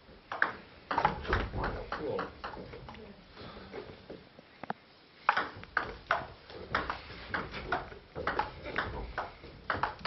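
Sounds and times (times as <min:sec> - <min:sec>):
table tennis ball clicking: 0:00.3 - 0:03.0, 0:05.3 - 0:10.0.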